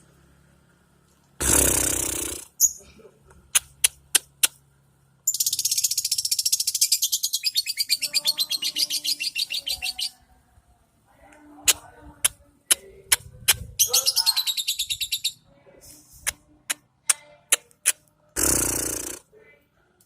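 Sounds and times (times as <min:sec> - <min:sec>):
lovebird chirping and trilling: 0:05.3 - 0:10.2, 0:13.2 - 0:15.4.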